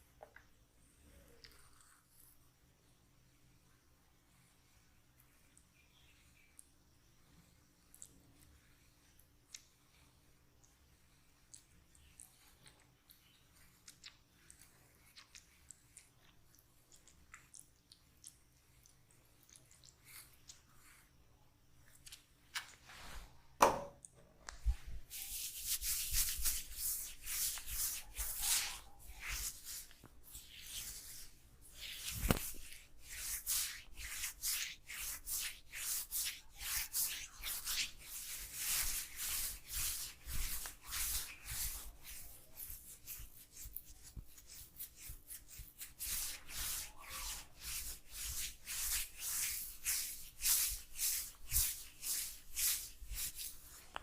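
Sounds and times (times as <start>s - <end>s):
sharp knock: 23.6s - 24.0s
hands rubbing hair and scalp: 24.4s - 54.0s.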